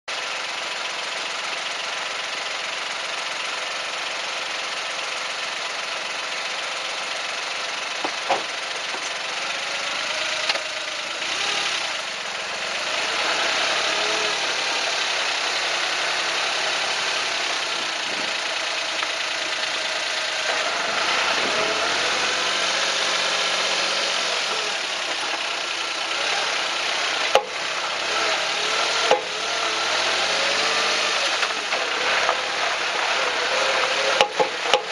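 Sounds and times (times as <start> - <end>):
car engine while driving: 0.1 - 34.9
suspension clunks: 7.9 - 10.8, 27.2 - 27.6, 28.8 - 29.7, 33.8 - 34.9.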